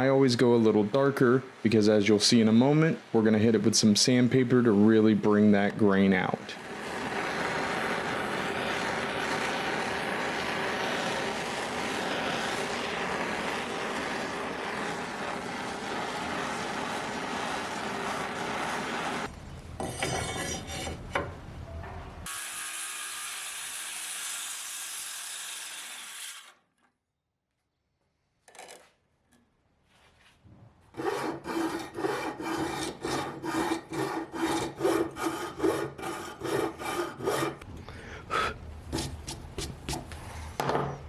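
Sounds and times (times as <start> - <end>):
sandpaper rubbing on wood: 31.0 - 37.6, 38.9 - 40.1.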